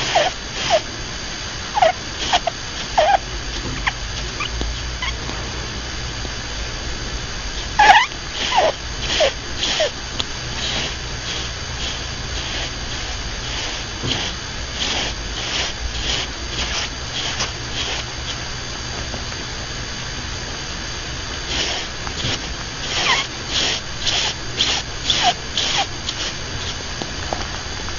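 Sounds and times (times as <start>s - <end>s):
rabbit snoring: 0.0s - 0.9s, 1.7s - 5.3s, 7.6s - 18.5s, 21.4s - 26.8s
falling squeaks: 1.8s - 3.2s, 7.8s - 9.9s, 21.5s - 26.8s.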